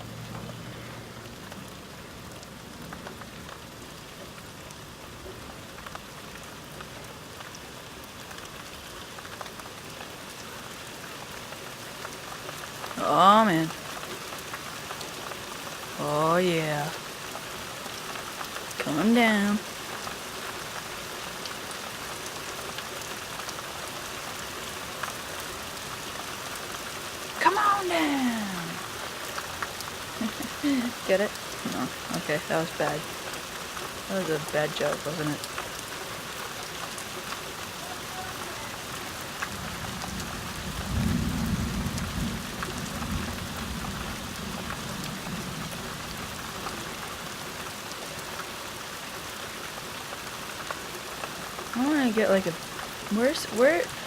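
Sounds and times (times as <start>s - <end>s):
rain hissing: 0.0s - 54.0s
thunder rumbling: 39.5s - 46.0s.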